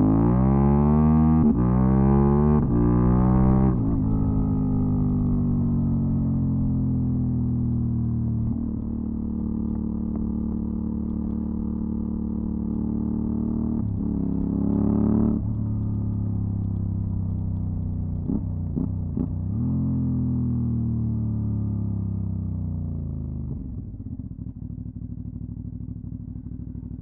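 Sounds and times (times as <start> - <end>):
motorcycle engine revving: 0.0 - 20.6.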